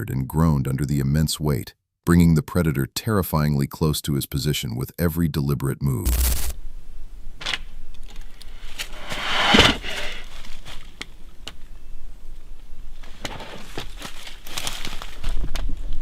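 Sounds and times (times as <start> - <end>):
claws scraping tree bark: 8.4 - 10.4.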